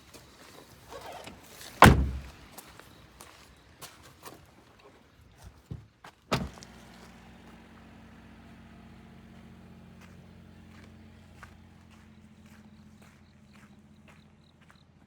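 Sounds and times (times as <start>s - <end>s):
loud thump: 1.8s - 2.4s.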